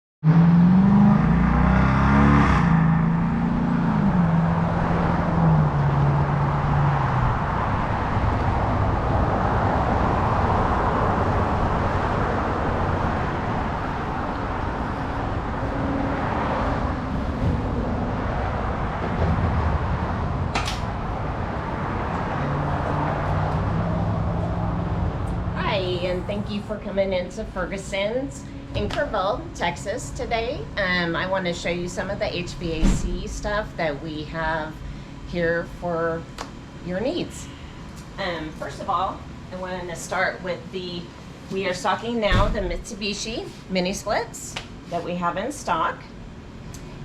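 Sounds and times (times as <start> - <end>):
vehicle engine: 0.2 - 35.6
traffic noise: 0.2 - 47.0.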